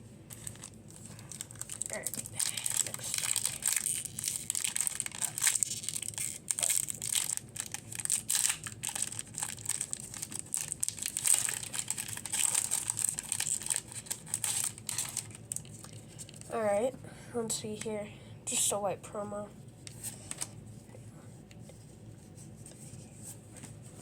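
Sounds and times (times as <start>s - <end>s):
foil wrapper tearing and crinkling: 0.3s - 16.5s.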